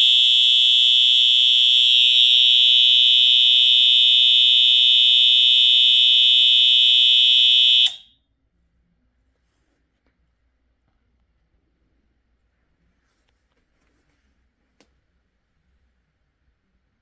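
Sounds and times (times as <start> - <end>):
fire alarm horn tone: 0.0 - 8.2.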